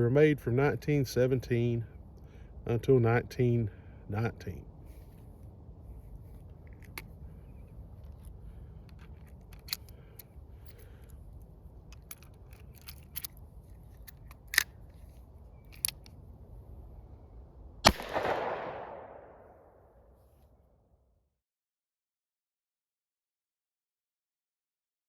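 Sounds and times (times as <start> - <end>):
gunshot bang: 17.8 - 19.5.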